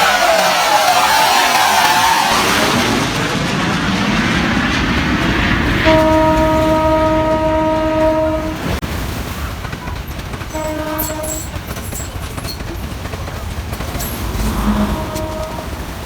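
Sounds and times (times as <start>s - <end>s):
train rumbling: 0.0s - 16.0s
train horn blast: 5.7s - 8.8s, 10.5s - 11.6s, 14.1s - 16.0s
loud rushing noise: 13.8s - 16.0s.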